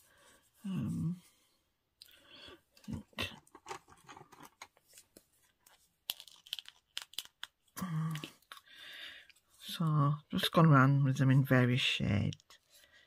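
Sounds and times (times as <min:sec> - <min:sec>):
paper and card rustling: 0:02.9 - 0:07.7.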